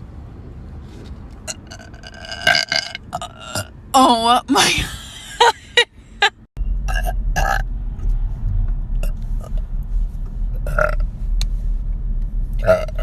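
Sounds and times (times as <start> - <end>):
low rumble: 5.9 - 13.0.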